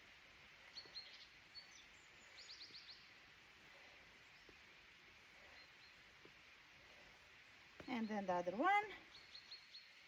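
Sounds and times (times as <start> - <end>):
small birds chirping: 0.6 - 3.4, 4.1 - 6.5, 7.7 - 10.0.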